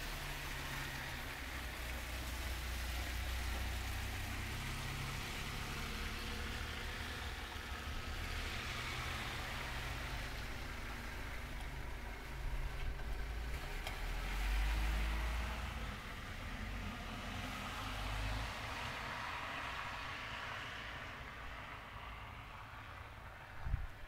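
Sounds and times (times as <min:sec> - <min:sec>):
wind buffeting microphone: 0:23.6 - 0:24.0.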